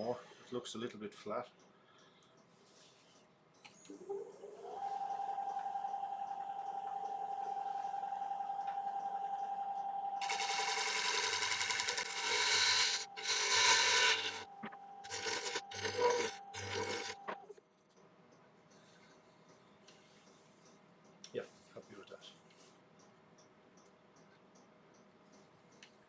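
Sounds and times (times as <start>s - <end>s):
turning tool scraping wood: 10.2s - 17.4s
wood lathe whining: 10.2s - 17.4s.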